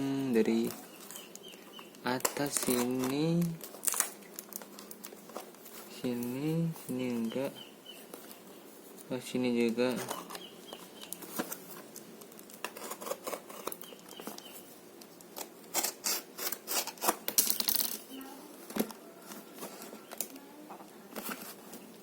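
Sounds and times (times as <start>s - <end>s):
plastic and cardboard crinkling tearing: 0.5s - 6.3s, 11.0s - 14.4s, 15.3s - 18.0s
packaging clicks: 0.6s - 5.6s.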